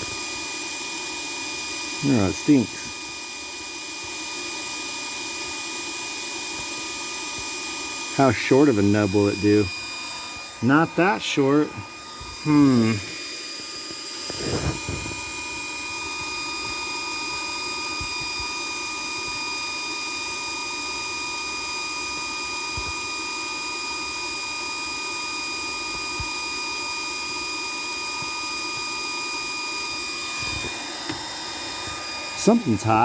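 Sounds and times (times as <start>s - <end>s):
high whining tones: 8.1s - 17.4s, 30.2s - 33.0s.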